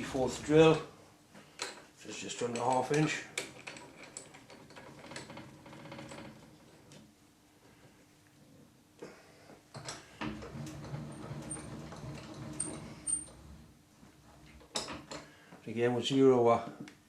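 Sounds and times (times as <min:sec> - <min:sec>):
metal tooling clicks and clunks: 0:01.6 - 0:07.0.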